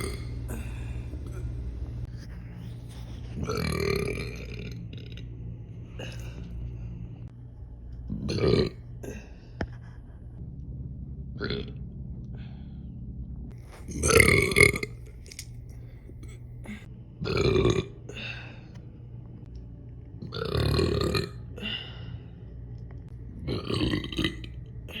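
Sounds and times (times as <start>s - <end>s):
woman burping: 0.0s - 1.6s, 13.9s - 15.4s.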